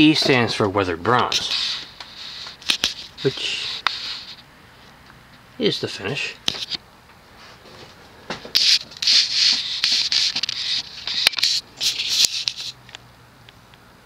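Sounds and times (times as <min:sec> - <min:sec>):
rubbing rustling scrapes: 0:01.4 - 0:04.4, 0:08.6 - 0:12.8.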